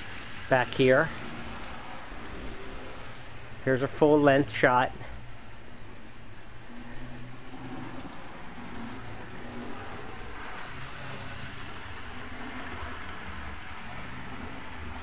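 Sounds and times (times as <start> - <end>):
model train motors whirring: 0.0 - 15.0.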